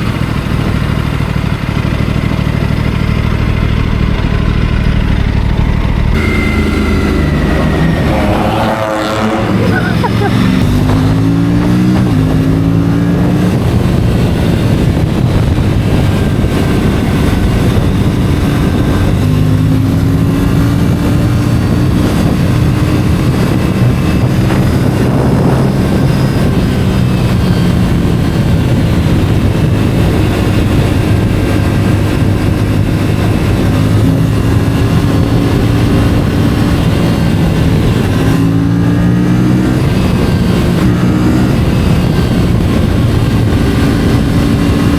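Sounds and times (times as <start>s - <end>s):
motorcycle engine running: 0.0s - 44.9s.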